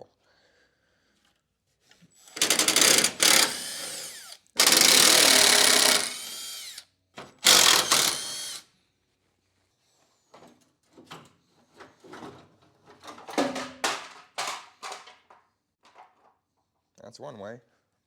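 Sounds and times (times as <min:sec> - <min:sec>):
power tool motor whining: 0:02.2 - 0:06.8, 0:07.4 - 0:08.6.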